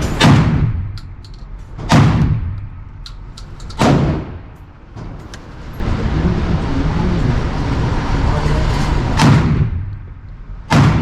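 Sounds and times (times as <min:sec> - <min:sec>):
shotgun shots echoing: 0:03.8 - 0:04.5.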